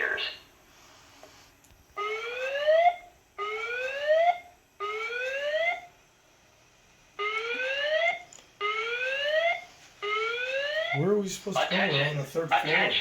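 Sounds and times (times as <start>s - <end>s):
fire alarm whoops: 2.0s - 5.9s, 7.2s - 11.1s.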